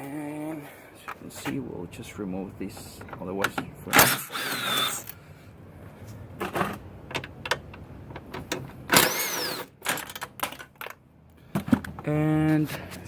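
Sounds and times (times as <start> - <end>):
tools clicking and knocking on metal: 2.7 - 5.2, 6.4 - 12.1.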